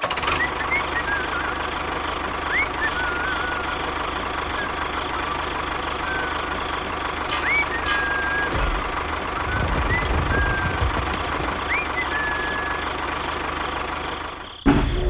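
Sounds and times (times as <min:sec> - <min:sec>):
engine idling: 0:00.0 - 0:15.0
thin wavering chirps: 0:02.5 - 0:13.0
sharp clicks: 0:04.1 - 0:13.0.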